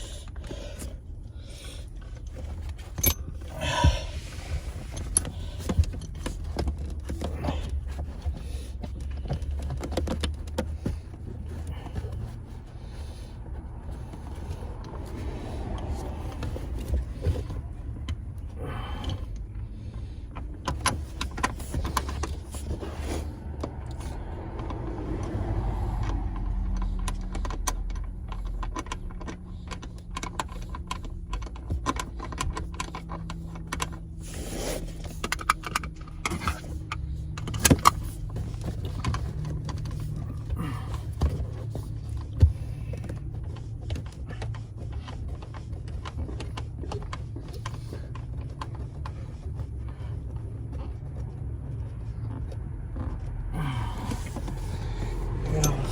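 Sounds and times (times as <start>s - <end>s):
steady low hum: 0.0s - 55.9s
metal parts clinking and rattling: 1.6s - 12.6s, 54.0s - 55.9s.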